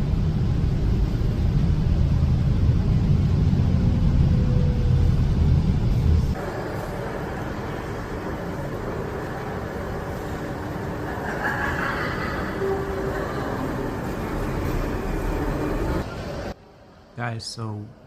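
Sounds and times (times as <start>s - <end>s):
vehicle rumble from inside: 0.0s - 8.3s.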